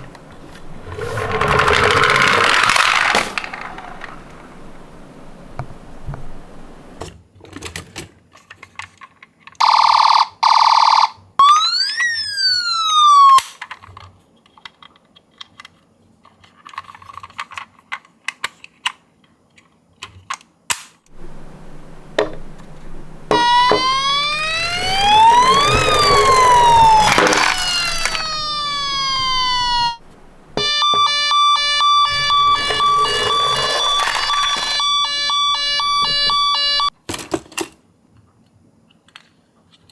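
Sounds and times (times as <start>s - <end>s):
ambulance siren wailing: 0.0s - 5.8s, 11.4s - 13.4s, 21.2s - 36.9s
small clicks and rattles: 0.0s - 6.3s, 13.7s - 20.4s, 21.1s - 36.9s
two-tone hi-lo siren: 0.6s - 4.8s, 9.6s - 13.4s, 21.2s - 36.9s
short buzzy tone: 21.2s - 36.9s.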